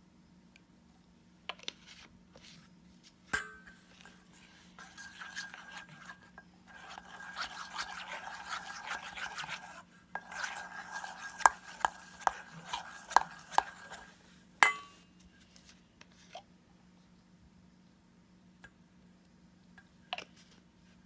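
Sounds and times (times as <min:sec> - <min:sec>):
utensil tapping against bowl: 0:03.4 - 0:04.2, 0:06.7 - 0:14.9
utensil scraping a bowl: 0:03.4 - 0:14.9.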